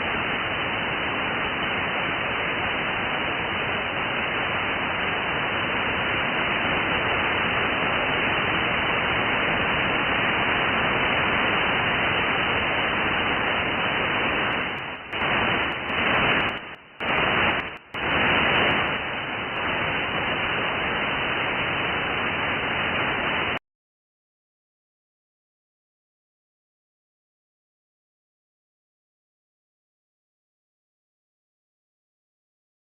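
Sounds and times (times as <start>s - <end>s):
radio static hiss: 0.0s - 23.6s.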